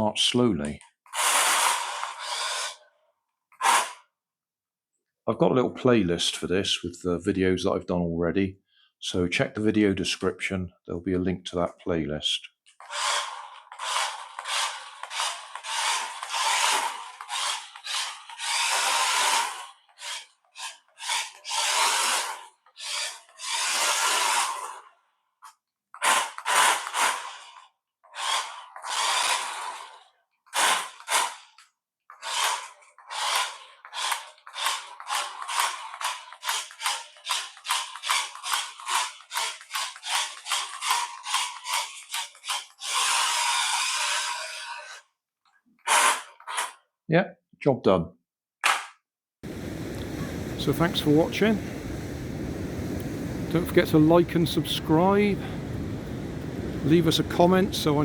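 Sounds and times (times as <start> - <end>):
toy car motor whirring: 1.1 - 2.9, 3.5 - 4.1, 12.7 - 25.0, 26.0 - 45.1, 45.8 - 46.8.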